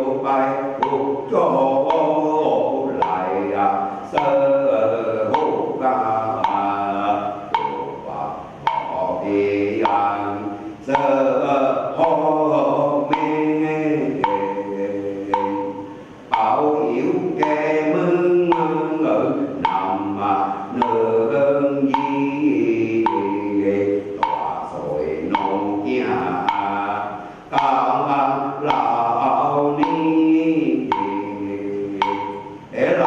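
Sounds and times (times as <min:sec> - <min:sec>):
voices chanting together: 0:00.0 - 0:33.0
wood block strikes: 0:00.0 - 0:33.0.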